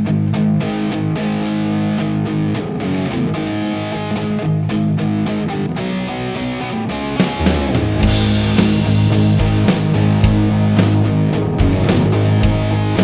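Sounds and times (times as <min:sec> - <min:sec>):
rock guitar chords: 0:00.0 - 0:13.0
drum beat: 0:07.2 - 0:13.0.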